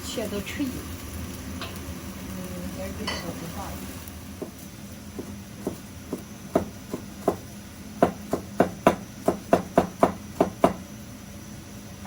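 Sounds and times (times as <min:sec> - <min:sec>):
knife chopping on cutting board: 0:05.2 - 0:07.4, 0:08.0 - 0:10.8.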